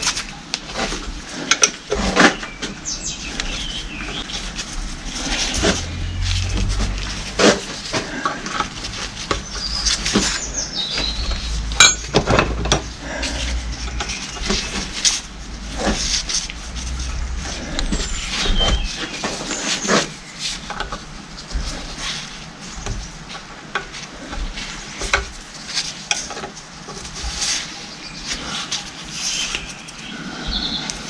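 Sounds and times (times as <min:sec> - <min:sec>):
hand tools clinking on metal: 0:11.8 - 0:12.5.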